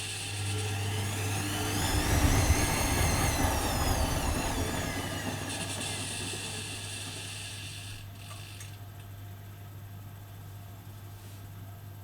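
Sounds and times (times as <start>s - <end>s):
washing machine running: 0.0s - 8.6s.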